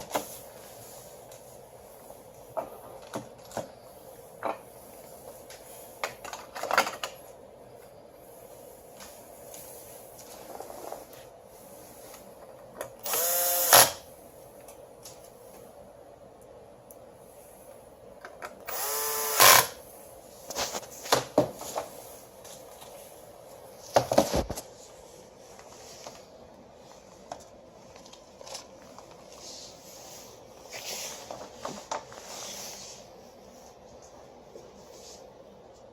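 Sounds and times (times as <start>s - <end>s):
power screwdriver whine: 13.0s - 14.0s, 18.7s - 19.8s.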